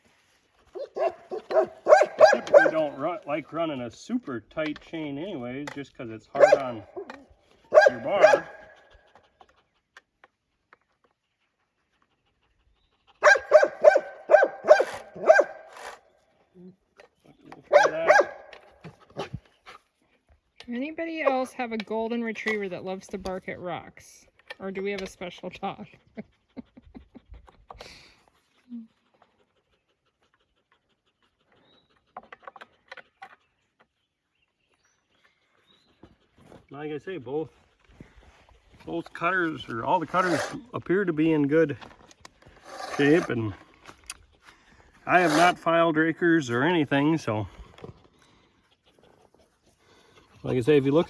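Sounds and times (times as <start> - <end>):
dog panting: 0.4 - 3.7, 6.4 - 10.0, 11.2 - 16.1, 17.6 - 19.8, 25.8 - 32.9, 47.5 - 51.0
dog barking: 0.8 - 3.0, 6.4 - 8.9, 13.2 - 16.0, 17.6 - 18.6.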